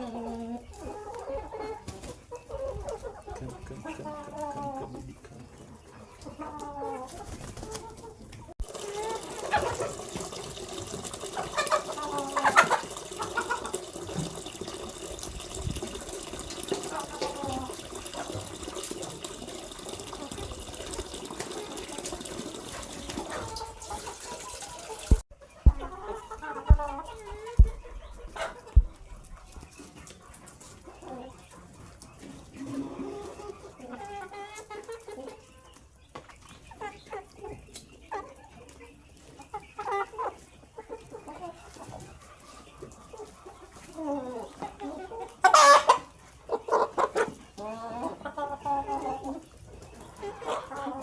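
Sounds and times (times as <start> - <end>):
chickens clucking: 0.0 - 51.0
sharp knocks: 25.1 - 26.0.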